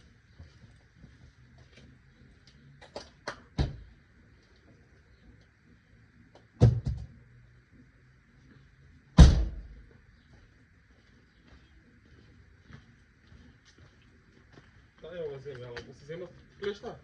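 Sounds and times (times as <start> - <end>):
faint steady hum: 0.0 - 17.0
sharp knocks and clunks: 6.6 - 7.2.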